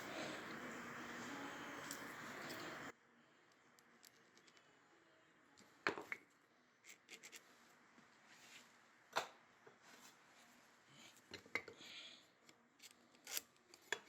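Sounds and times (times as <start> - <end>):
soft scratches: 6.9 - 8.8.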